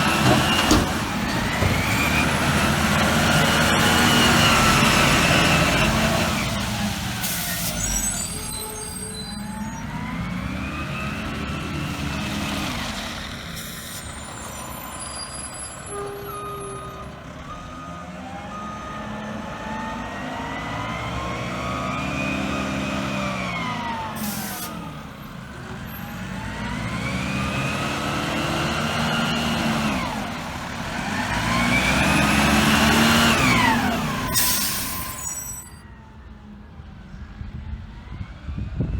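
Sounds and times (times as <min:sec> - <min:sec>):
garbage truck engine: 0:00.0 - 0:37.6
high squeal: 0:07.2 - 0:10.0, 0:13.6 - 0:17.2, 0:33.4 - 0:35.8
short air hisses: 0:34.3 - 0:35.6.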